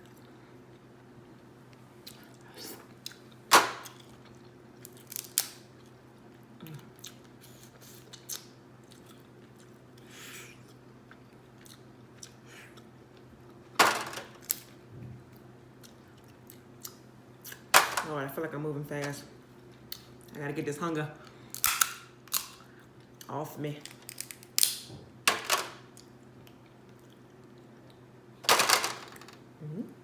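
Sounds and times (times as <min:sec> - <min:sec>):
person chewing: 0:00.0 - 0:13.7, 0:25.9 - 0:28.0
crab shell cracking: 0:04.8 - 0:05.6, 0:21.5 - 0:22.6, 0:23.8 - 0:24.9.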